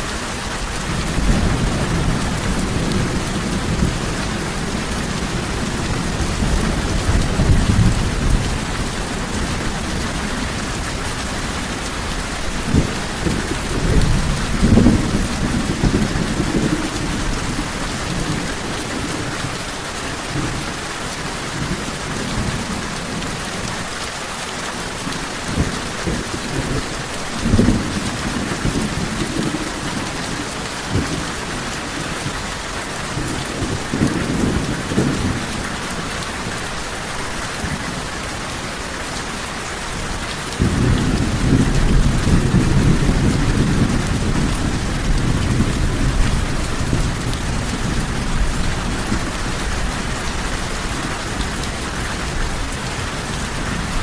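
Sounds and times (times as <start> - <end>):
steady rain falling: 0.0 - 54.0
thunder rumbling: 0.1 - 19.6, 40.0 - 54.0.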